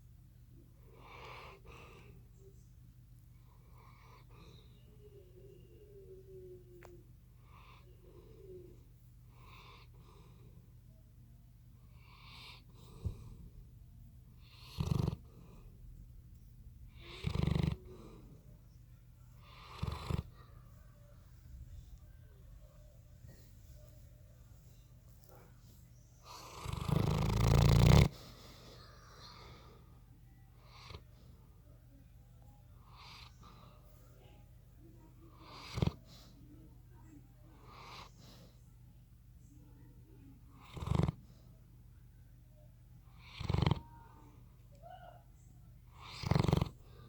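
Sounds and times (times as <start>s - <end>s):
steady low hum: 0.0s - 35.4s
dog breathing quietly: 0.6s - 5.2s, 6.0s - 10.8s, 11.8s - 31.7s, 35.0s - 38.8s
dog snoring: 0.8s - 2.1s, 3.4s - 4.7s, 7.3s - 10.6s, 11.9s - 13.6s, 14.3s - 15.8s, 16.9s - 18.4s, 19.4s - 20.7s, 26.2s - 28.4s, 30.6s - 31.2s, 35.3s - 36.2s, 37.6s - 38.2s, 40.4s - 41.3s, 43.0s - 44.0s, 45.8s - 47.0s
dog snorting: 14.4s - 15.7s, 16.9s - 18.4s, 19.4s - 20.6s, 26.2s - 28.6s, 35.4s - 36.3s, 40.6s - 41.3s, 43.1s - 43.9s, 45.9s - 47.0s.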